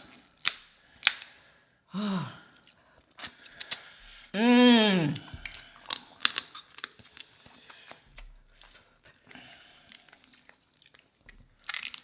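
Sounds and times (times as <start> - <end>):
crab shell cracking: 0.0 - 1.4, 3.2 - 3.9, 5.4 - 8.0, 11.6 - 12.0.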